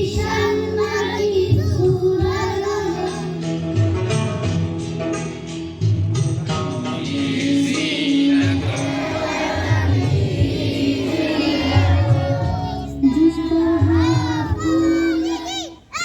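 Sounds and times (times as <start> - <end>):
group of voices singing: 0.0 - 3.4, 6.9 - 15.5
backing music with low beat: 0.0 - 15.5.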